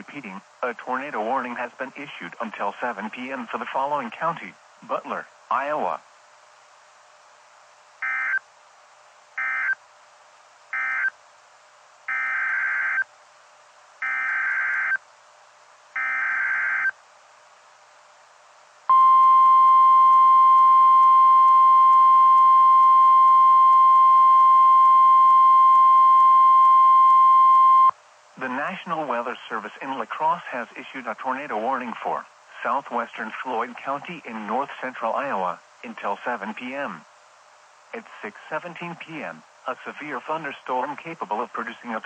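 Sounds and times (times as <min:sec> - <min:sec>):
screeching alert data bursts: 0:08.0 - 0:08.4, 0:09.4 - 0:09.8, 0:10.7 - 0:11.1, 0:12.1 - 0:13.1, 0:14.0 - 0:15.0, 0:16.0 - 0:16.9
steady warning alarm tone: 0:08.0 - 0:08.4, 0:09.4 - 0:09.8, 0:10.7 - 0:11.1, 0:12.1 - 0:13.1, 0:14.0 - 0:15.0, 0:16.0 - 0:17.0, 0:18.9 - 0:27.9.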